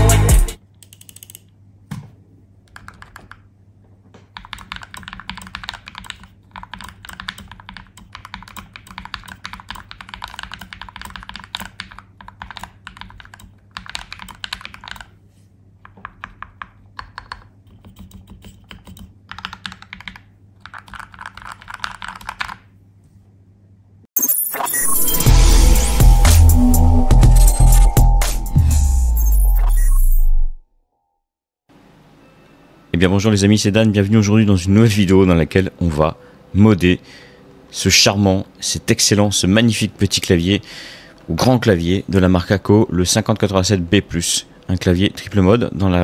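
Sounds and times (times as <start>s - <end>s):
mechanical keyboard typing: 2.7s - 3.4s, 4.3s - 15.1s, 15.8s - 22.7s.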